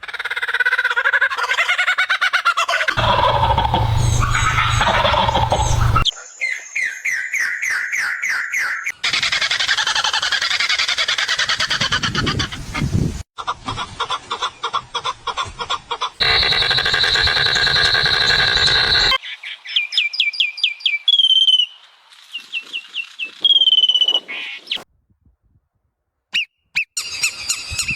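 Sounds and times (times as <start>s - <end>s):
bird chattering: 3.0s - 6.1s, 16.2s - 19.2s
bird whistled chirps: 3.0s - 8.9s, 16.2s - 24.8s
long held bird whistle: 16.2s - 24.7s, 26.3s - 27.9s.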